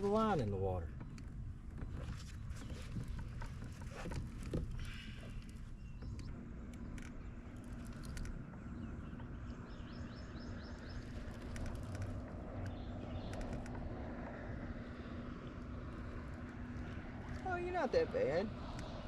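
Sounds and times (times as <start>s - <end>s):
birds chirping: 0.0s - 18.4s
small clicks: 5.4s - 8.5s, 11.2s - 13.8s.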